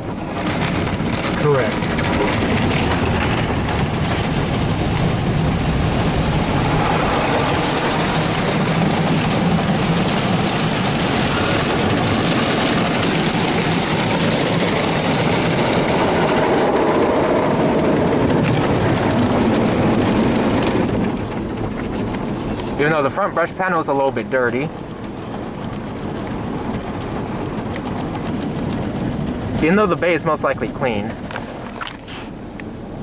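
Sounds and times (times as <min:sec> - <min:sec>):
car wash brushes scrubbing: 0:00.0 - 0:32.4.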